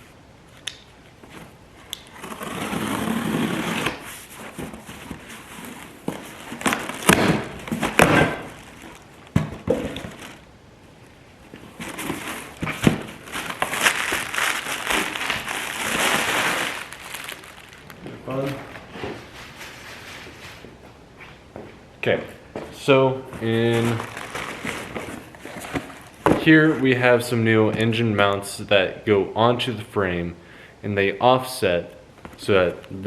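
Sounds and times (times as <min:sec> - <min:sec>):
packing material rustling: 0:02.0 - 0:10.5, 0:11.5 - 0:20.6, 0:23.4 - 0:26.4.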